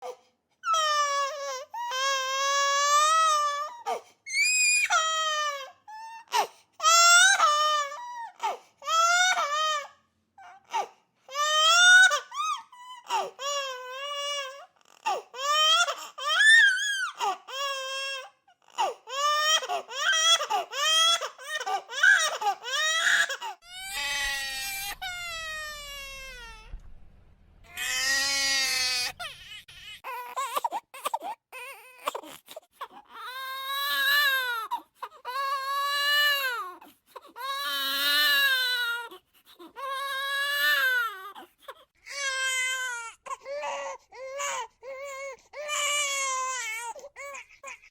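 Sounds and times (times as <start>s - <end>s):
high-pitched sobbing wails: 22.0s - 26.7s.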